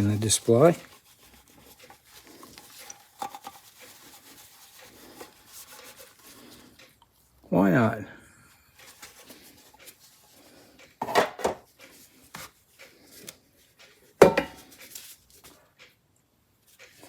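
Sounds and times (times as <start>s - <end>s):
metal tins clinking on wooden shelf: 11.0s - 11.7s, 14.2s - 14.7s.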